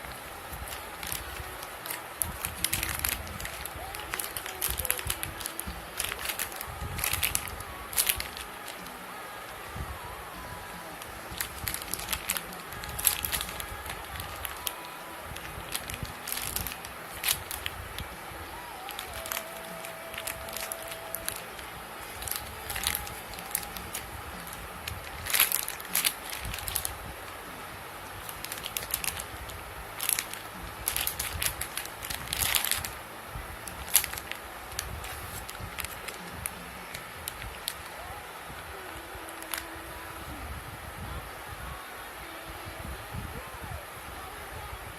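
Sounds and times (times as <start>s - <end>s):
handling noise crackling and clicking: 0.0s - 9.6s, 11.0s - 18.1s, 18.8s - 27.0s, 28.2s - 33.0s, 33.6s - 38.0s, 39.2s - 39.7s.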